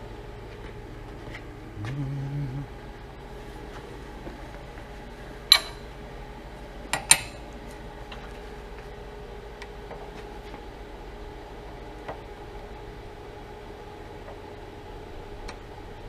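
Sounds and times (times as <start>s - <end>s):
faint steady hum: 0.0s - 16.0s
steel clanking on metal: 5.5s - 5.8s.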